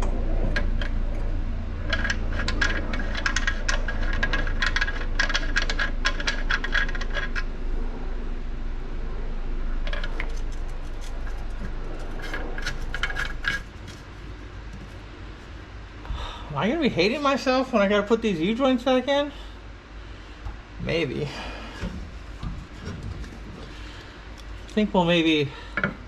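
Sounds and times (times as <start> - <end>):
metal tube rattling and scraping: 0.0 - 1.2, 1.8 - 7.5, 9.8 - 15.6, 21.7 - 24.8
low steady hum: 0.0 - 26.0.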